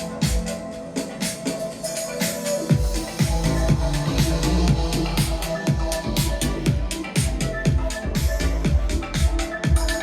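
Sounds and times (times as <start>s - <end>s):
electronic dance music over speakers: 0.0s - 10.0s
bass drum: 2.7s - 10.0s.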